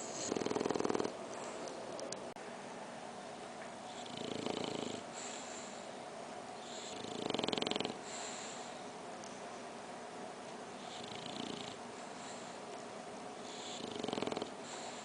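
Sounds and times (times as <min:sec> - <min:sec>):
puppy snoring: 0:00.0 - 0:01.7, 0:03.9 - 0:05.9, 0:06.6 - 0:08.8, 0:10.8 - 0:12.6, 0:13.4 - 0:15.0.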